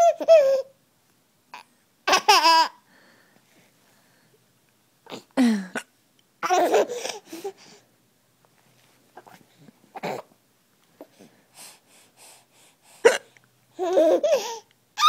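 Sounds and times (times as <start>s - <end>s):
baby laughing: 0.0s - 0.7s, 2.1s - 2.8s, 6.4s - 7.3s, 13.0s - 14.7s.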